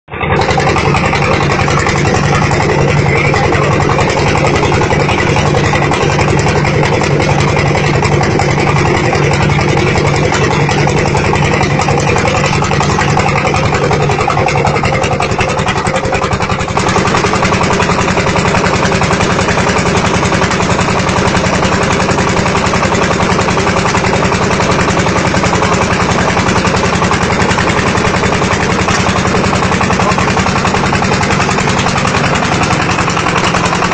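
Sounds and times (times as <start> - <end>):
brick press machine chugging: 0.1 - 33.9.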